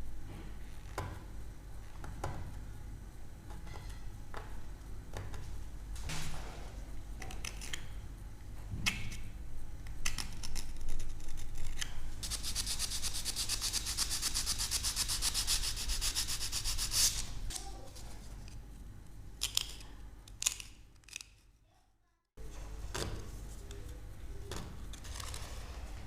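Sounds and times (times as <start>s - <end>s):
steady low hum: 0.0s - 21.6s
plaster being sanded by hand: 12.2s - 17.3s.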